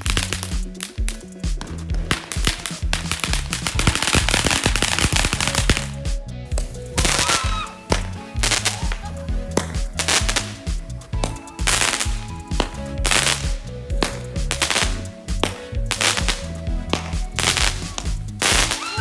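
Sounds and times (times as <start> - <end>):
music with steady beat: 0.0 - 19.0
fireworks bangs and crackles: 1.6 - 5.9.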